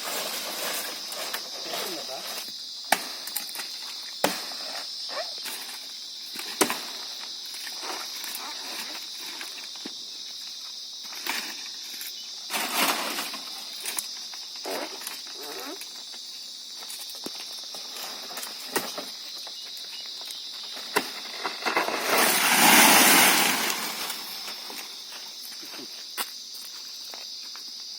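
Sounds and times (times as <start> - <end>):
insects chirring: 0.0 - 27.9
loud rushing rustling noise: 21.8 - 24.8.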